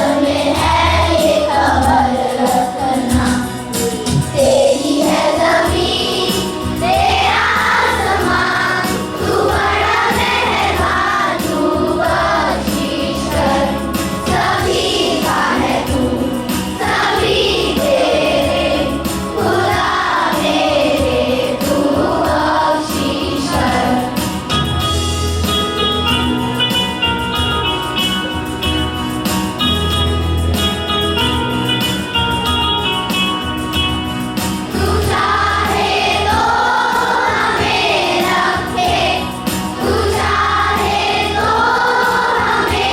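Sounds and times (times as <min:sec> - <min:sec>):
group of voices singing: 0:00.0 - 0:24.7, 0:34.6 - 0:42.9
instrumental accompaniment: 0:00.0 - 0:42.9.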